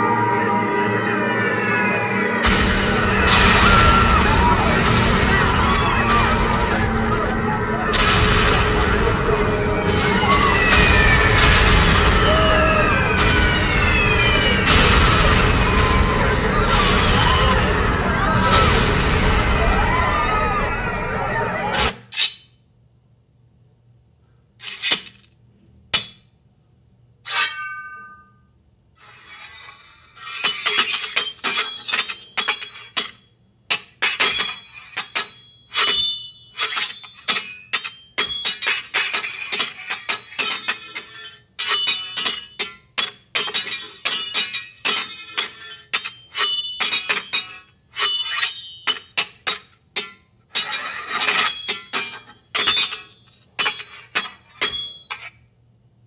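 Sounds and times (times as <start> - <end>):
sharp clinking impacts with ringing: 30.4 - 50.3, 51.2 - 55.5.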